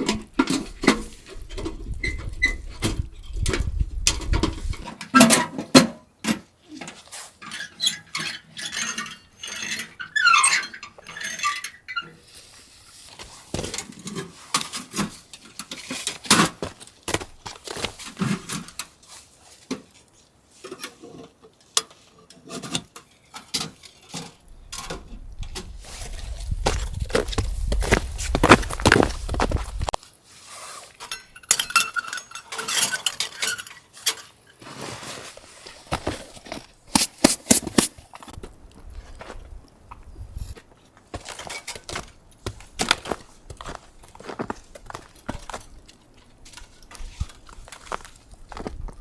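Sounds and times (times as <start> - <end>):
squeaky scraping: 1.8 - 3.4, 7.0 - 12.6, 24.7 - 38.4.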